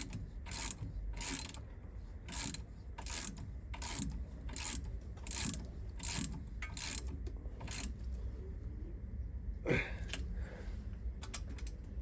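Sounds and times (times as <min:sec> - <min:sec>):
ratchet wrench clicking: 0:00.0 - 0:01.6, 0:02.3 - 0:08.0.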